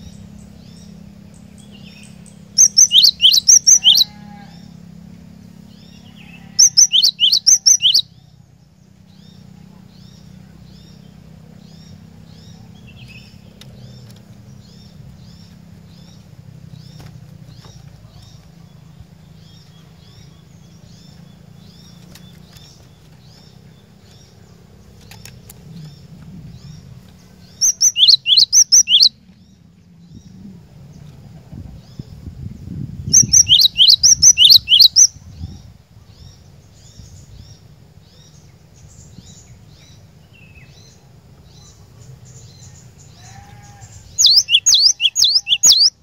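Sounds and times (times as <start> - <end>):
steady low hum: 0.0 - 27.6.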